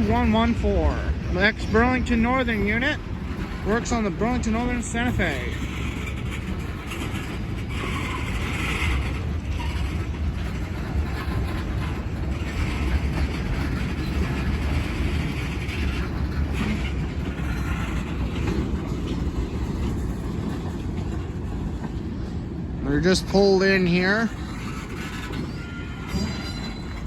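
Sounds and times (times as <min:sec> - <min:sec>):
freight train rolling past: 0:00.0 - 0:27.0.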